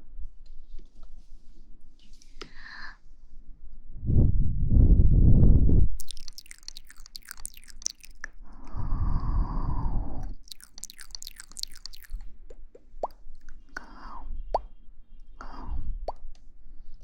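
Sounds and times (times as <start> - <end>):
short mouth pops: 6.0 - 8.3, 10.2 - 13.2
wet mouth clicks: 6.0 - 8.3, 10.2 - 13.6.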